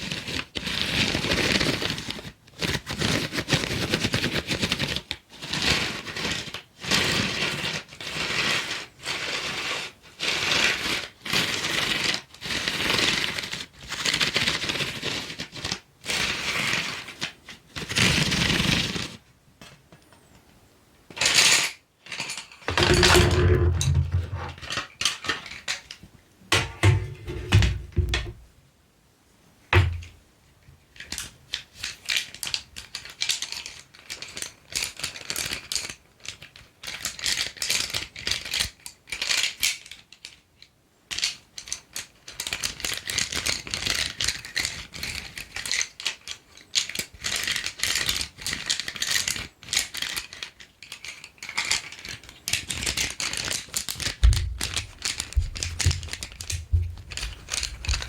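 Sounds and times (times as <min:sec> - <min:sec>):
colored pencils clattering: 0:21.2 - 0:25.9, 0:48.6 - 0:58.0
dull thumps: 0:22.7 - 0:24.6, 0:26.5 - 0:28.5, 0:54.2 - 0:58.0.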